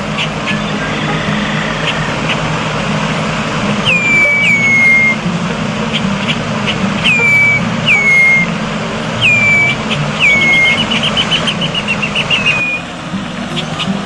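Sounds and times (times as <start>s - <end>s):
bird whistling calls: 3.8s - 5.3s, 6.7s - 8.6s, 9.2s - 12.9s.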